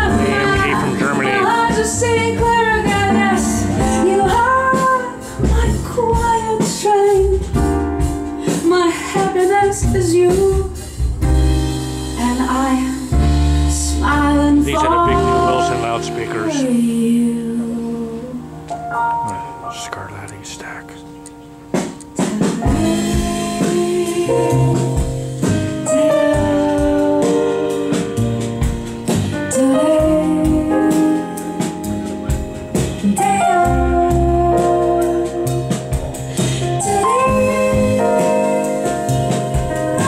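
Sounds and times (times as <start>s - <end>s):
music with keyboard and bass: 0.0s - 40.0s.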